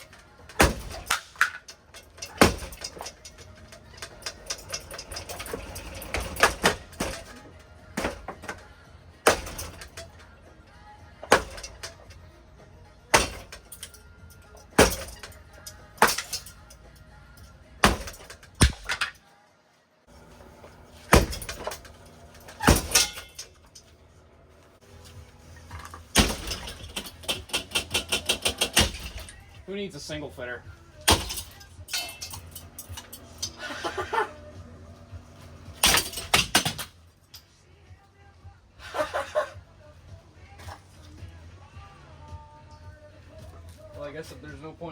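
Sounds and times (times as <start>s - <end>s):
ceiling fan being smashed: 0.0s - 8.6s, 9.2s - 10.2s, 11.2s - 12.2s, 13.1s - 14.0s, 14.6s - 16.8s, 17.8s - 19.2s, 21.0s - 23.8s, 25.8s - 29.6s, 31.0s - 34.2s, 35.7s - 37.0s
background music: 0.0s - 44.9s.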